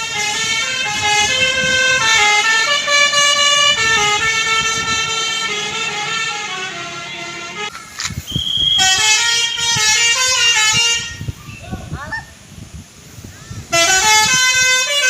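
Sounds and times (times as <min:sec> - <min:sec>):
musical bus air horn tune: 0:00.0 - 0:07.7, 0:08.5 - 0:11.4, 0:13.7 - 0:15.0.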